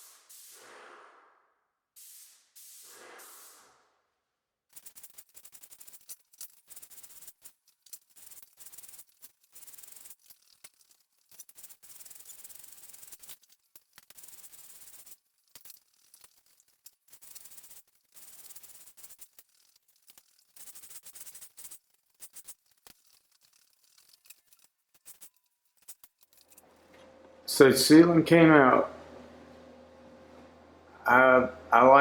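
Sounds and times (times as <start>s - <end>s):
paint sprayer hissing: 0.0s - 1.0s, 2.0s - 3.8s.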